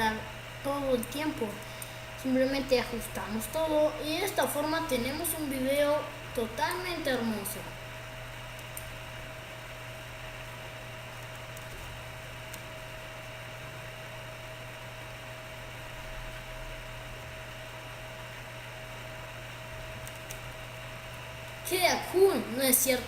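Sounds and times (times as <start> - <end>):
electrical hum and hiss: 0.0 - 23.0.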